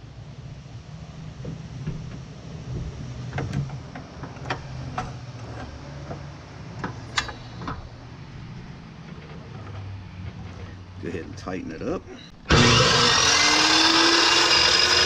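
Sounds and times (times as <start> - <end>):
metallic clicks and knocks: 3.3 - 7.9.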